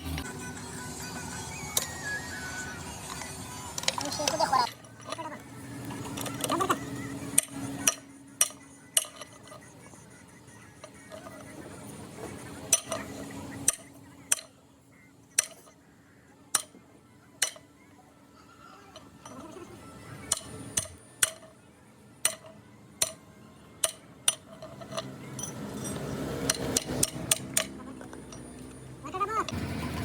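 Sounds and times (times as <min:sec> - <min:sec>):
hand tools clinking on steel: 0:03.0 - 0:09.9, 0:12.6 - 0:14.6, 0:17.4 - 0:17.7, 0:18.9 - 0:21.6, 0:22.2 - 0:23.2, 0:23.8 - 0:29.6.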